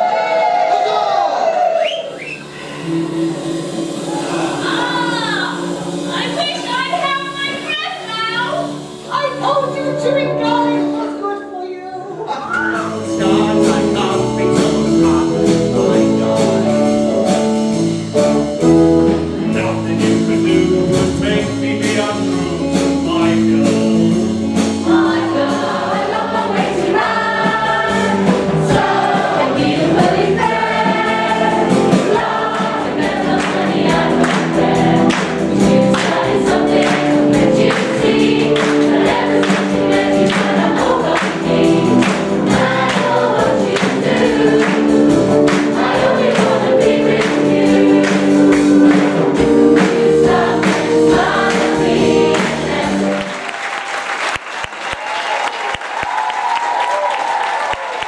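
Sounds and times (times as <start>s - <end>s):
group of voices singing: 0.0s - 9.0s, 11.8s - 17.2s, 19.3s - 53.5s
backing track with steady beat: 12.5s - 53.4s.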